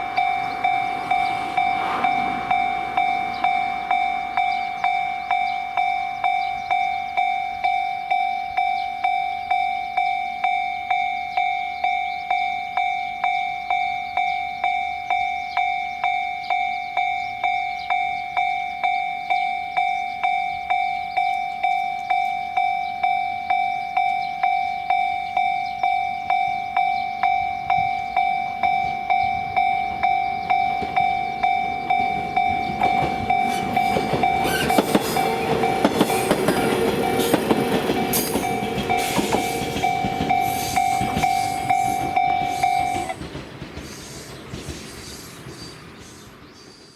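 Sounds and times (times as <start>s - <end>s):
level crossing bell ringing: 0.0s - 43.2s
approaching train: 0.0s - 46.9s.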